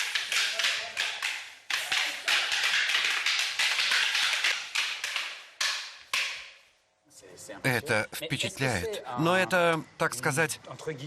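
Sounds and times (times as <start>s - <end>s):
sharp slaps and smacks: 0.0s - 6.7s.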